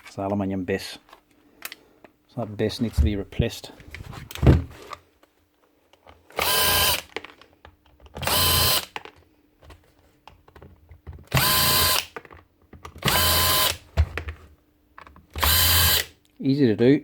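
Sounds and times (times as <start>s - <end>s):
electric drill motor whine: 6.4s - 7.0s, 8.2s - 8.8s, 11.3s - 12.0s, 13.0s - 13.8s, 15.4s - 16.1s.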